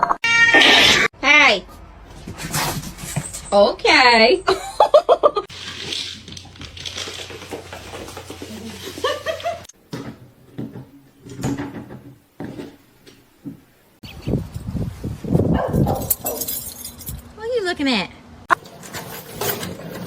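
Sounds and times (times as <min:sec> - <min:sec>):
cat meowing: 0:00.0 - 0:01.1.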